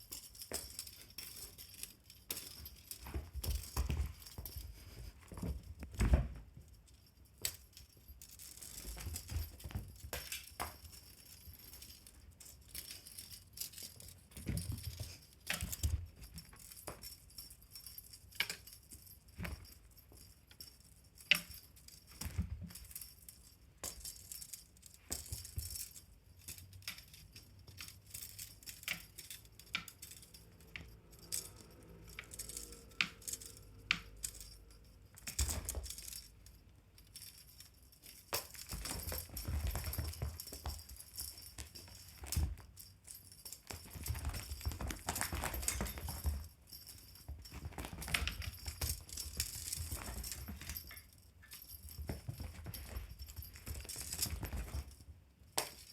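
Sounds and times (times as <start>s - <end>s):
pet toy jingling and rattling: 0.0s - 55.9s
knocks and scuffling: 0.2s - 20.6s, 37.2s - 55.9s.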